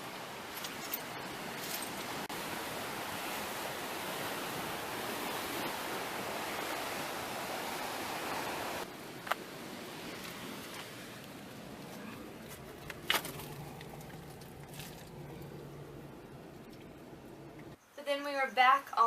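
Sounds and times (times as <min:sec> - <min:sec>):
ocean surf washing in: 0:00.0 - 0:12.4.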